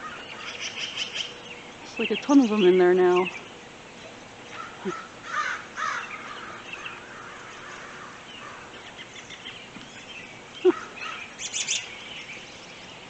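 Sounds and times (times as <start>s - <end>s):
crows cawing: 4.5s - 9.0s, 10.7s - 11.6s.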